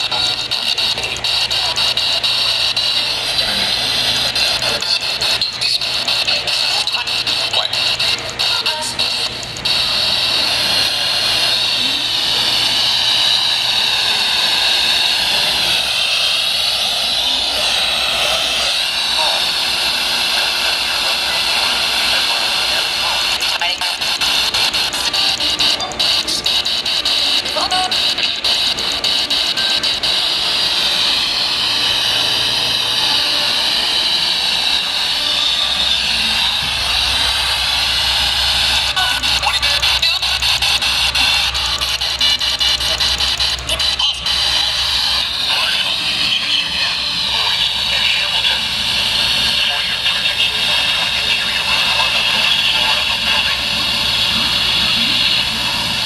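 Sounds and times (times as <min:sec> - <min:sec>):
radio static hiss: 0:00.0 - 0:56.0
low hum: 0:25.2 - 0:56.0.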